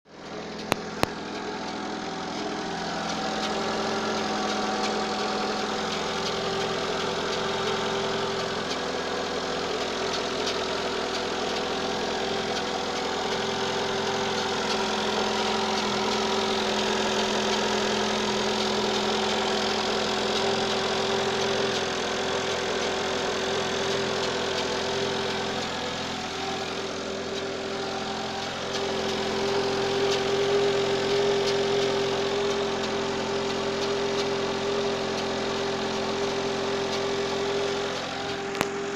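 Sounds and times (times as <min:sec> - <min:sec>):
engine rattle: 0:00.0 - 0:38.9
car engine idling: 0:00.1 - 0:38.9
sharp clicks: 0:00.5 - 0:01.8.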